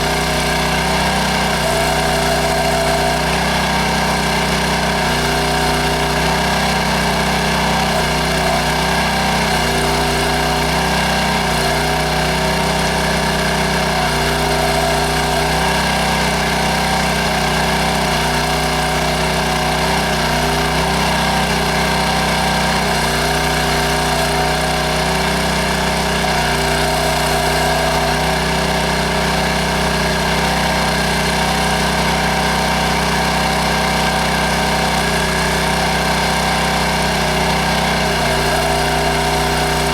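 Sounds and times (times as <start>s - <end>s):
small backhoe engine running: 0.0s - 39.9s.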